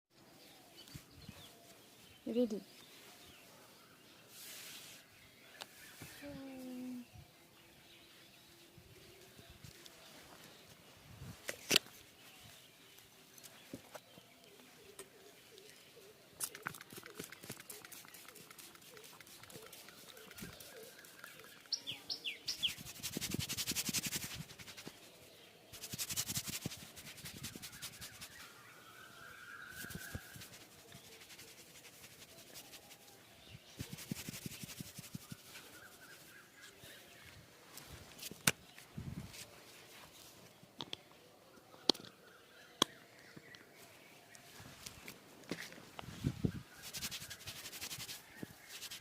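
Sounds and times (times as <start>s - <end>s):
bird chirps: 12.0s - 25.0s, 25.7s - 37.4s
hands rubbing hair: 16.5s - 21.7s, 22.5s - 25.0s, 25.7s - 28.6s, 29.7s - 33.2s, 33.8s - 36.4s, 46.2s - 49.0s.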